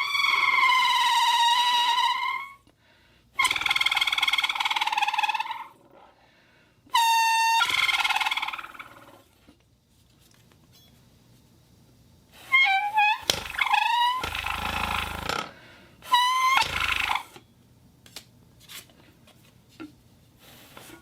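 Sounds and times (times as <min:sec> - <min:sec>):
whistle blasts: 0:06.9 - 0:08.5, 0:16.0 - 0:17.4.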